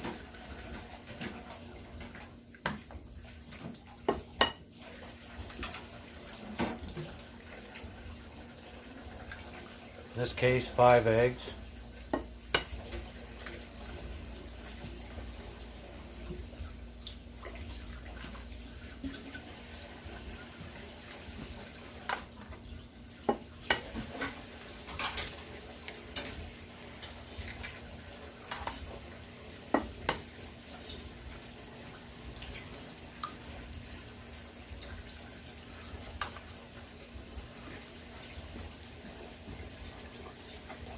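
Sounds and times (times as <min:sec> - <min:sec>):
low steady hum: 0:00.0 - 0:40.9
utensil clinking on bowl: 0:28.5 - 0:32.1, 0:34.3 - 0:36.4.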